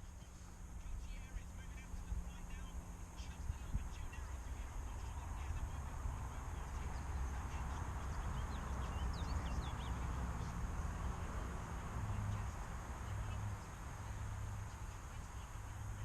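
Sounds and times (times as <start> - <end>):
wind on microphone: 3.2 - 13.8
high bird chirps: 8.0 - 10.5.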